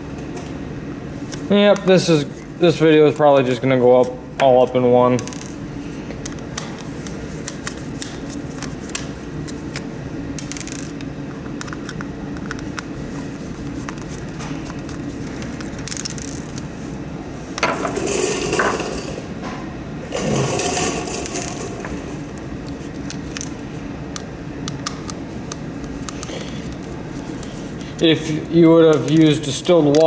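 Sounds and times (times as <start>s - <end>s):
small parts clicking and scraping: 14.9s - 16.6s, 20.1s - 22.4s.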